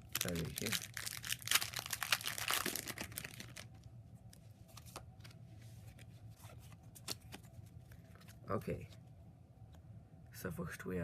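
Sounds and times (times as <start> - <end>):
foil wrapper tearing and crinkling: 0.0 - 3.7
cards rustling: 0.2 - 3.7, 4.6 - 8.4.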